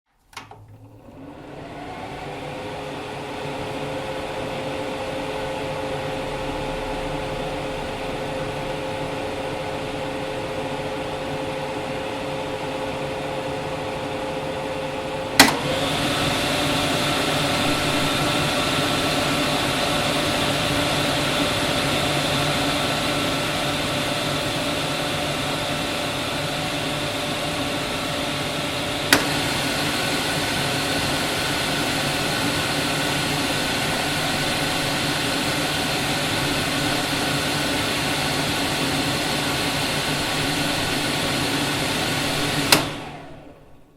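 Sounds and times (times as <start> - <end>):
range hood fan whirring: 0.2 - 43.9
switch click: 15.4 - 15.7, 29.1 - 29.4, 42.7 - 43.0.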